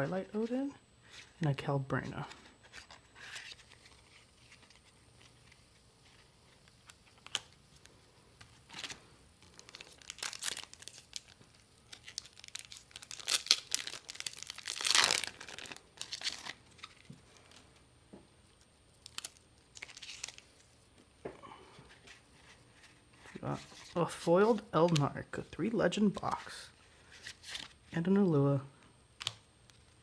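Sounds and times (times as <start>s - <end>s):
card pack wrapper crinkling: 2.1s - 17.6s, 18.6s - 20.8s.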